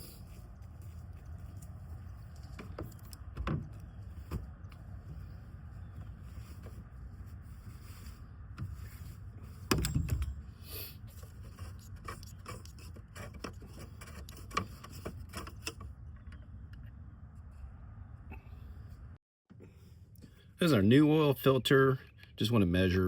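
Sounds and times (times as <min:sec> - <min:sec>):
oil filter clicks and scrapes: 0:00.0 - 0:17.6.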